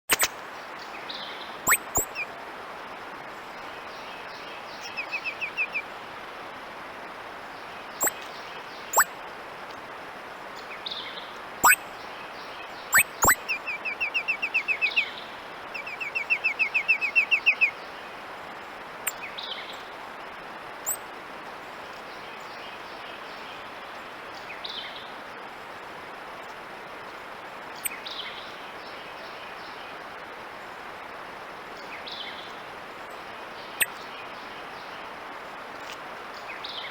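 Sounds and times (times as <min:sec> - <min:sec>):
titmouse calling: 0:00.1 - 0:00.3, 0:01.7 - 0:02.2, 0:11.6 - 0:11.8, 0:12.9 - 0:13.6.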